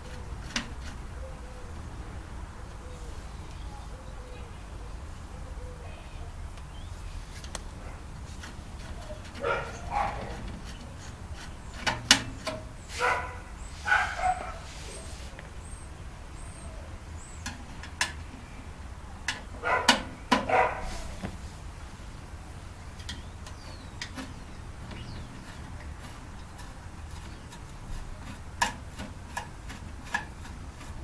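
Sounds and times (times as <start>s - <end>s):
dog barking: 9.4s - 10.4s, 13.0s - 14.7s, 19.6s - 21.0s.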